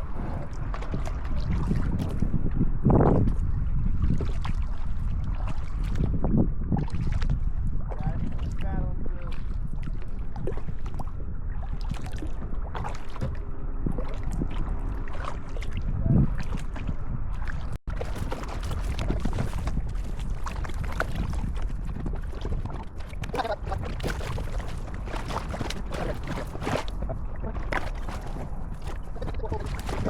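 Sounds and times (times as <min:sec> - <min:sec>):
wind rumbling on microphone: 0:00.0 - 0:30.0
paddle strokes: 0:08.2 - 0:30.0
water splashing and dripping: 0:14.0 - 0:30.0.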